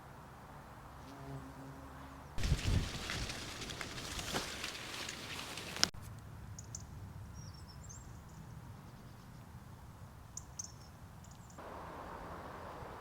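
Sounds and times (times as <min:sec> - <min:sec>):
rustling hiss: 0:02.4 - 0:06.0
low wind rumble: 0:02.4 - 0:08.0.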